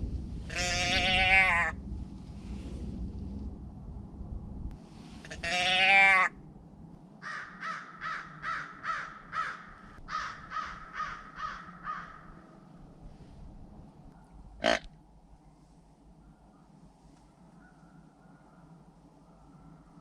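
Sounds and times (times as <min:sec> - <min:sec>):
crow cawing: 0:00.5 - 0:01.7, 0:07.2 - 0:12.4
loud wavering bleat: 0:00.5 - 0:01.8, 0:05.3 - 0:06.3, 0:14.6 - 0:14.9.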